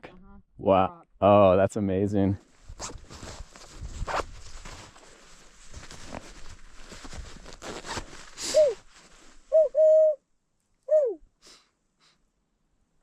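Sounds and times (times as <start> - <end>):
wind and rustling: 2.4 - 9.6
person hooting woo calls: 8.5 - 8.8, 9.5 - 10.2, 10.9 - 11.2.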